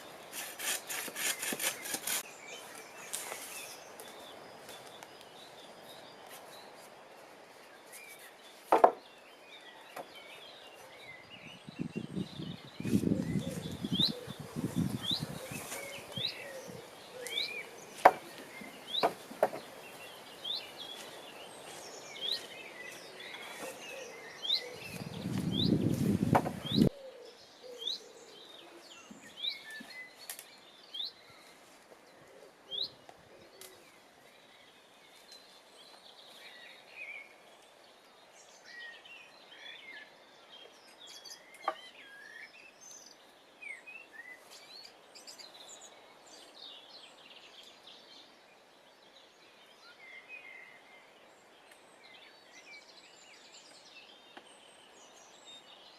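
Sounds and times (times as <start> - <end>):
wild birds chirping: 0.0 - 55.9.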